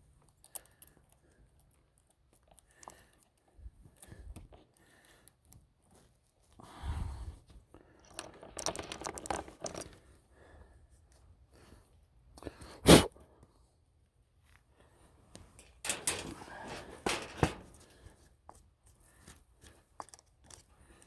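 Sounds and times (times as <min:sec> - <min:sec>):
chainsaw chain clinking and rattling: 0:08.0 - 0:10.0, 0:15.5 - 0:18.0.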